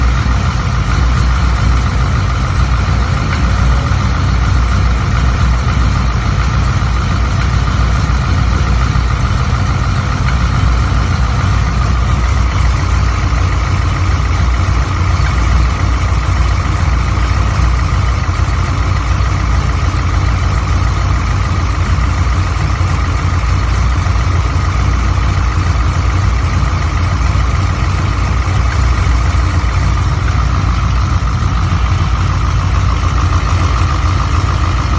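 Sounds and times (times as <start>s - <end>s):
high whine: 0.0s - 16.2s
vehicle engine idling: 0.0s - 34.9s.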